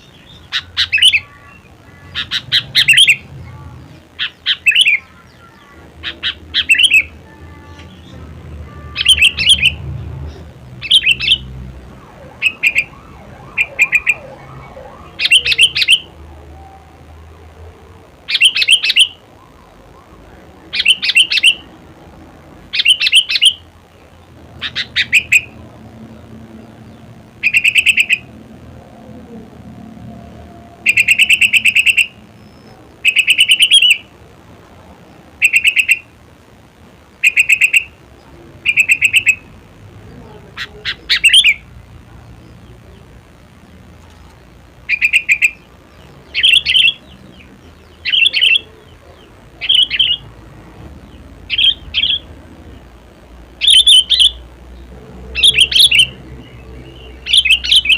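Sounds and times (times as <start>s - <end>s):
bird chattering song: 0.0s - 11.6s, 12.3s - 17.2s, 18.2s - 21.8s, 22.6s - 29.6s, 30.8s - 34.2s, 34.9s - 36.2s, 37.1s - 57.9s.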